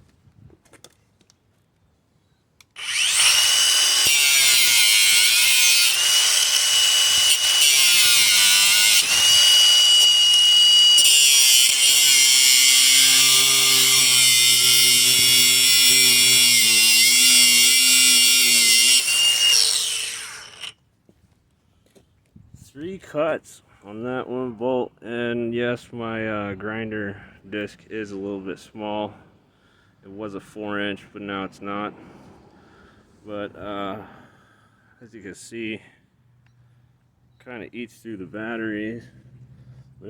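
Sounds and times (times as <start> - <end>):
angle grinder cutting metal bolt: 2.8 - 20.8
low hum: 29.2 - 34.6.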